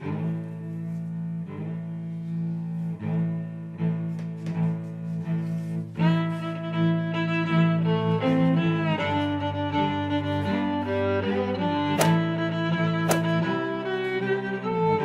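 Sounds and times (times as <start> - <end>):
bowed strings music: 0.0 - 15.0
sharp click: 12.0 - 12.2, 13.1 - 13.4.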